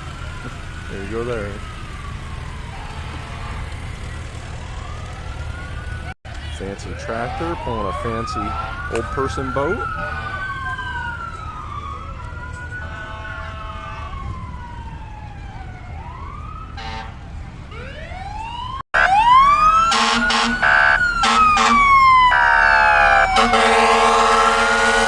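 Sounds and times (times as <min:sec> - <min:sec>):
emergency sirens wailing: 0:00.0 - 0:25.0
air horn blasts: 0:12.8 - 0:14.3, 0:16.8 - 0:17.2, 0:19.8 - 0:22.5, 0:23.1 - 0:25.0.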